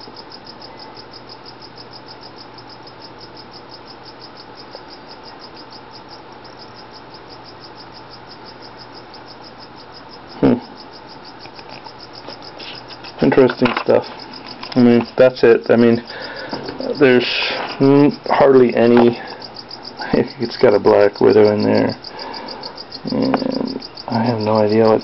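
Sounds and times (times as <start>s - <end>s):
cricket chirping: 0.0s - 25.0s.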